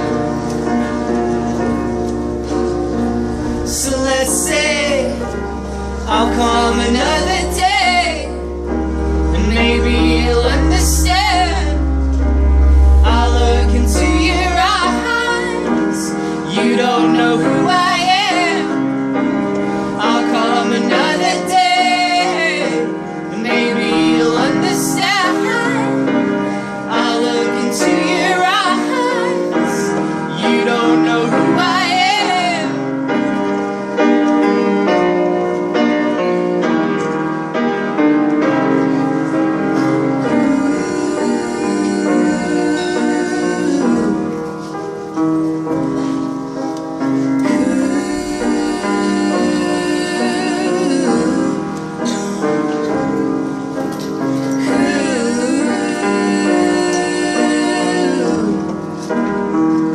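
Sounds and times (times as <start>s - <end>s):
voices singing wordless lines: 3.6s - 8.6s, 9.3s - 11.9s, 12.6s - 26.2s, 26.9s - 33.0s, 40.2s - 44.4s, 47.4s - 52.5s, 54.6s - 58.9s.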